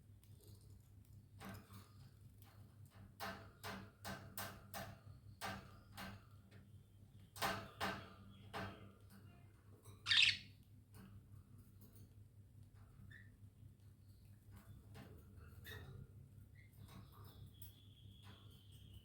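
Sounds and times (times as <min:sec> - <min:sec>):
budgies chirping: 0:10.1 - 0:10.4.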